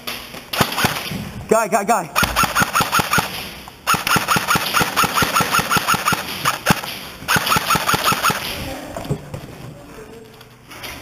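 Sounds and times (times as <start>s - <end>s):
airsoft gun full-auto rattle: 0.6s - 1.1s, 2.2s - 8.5s.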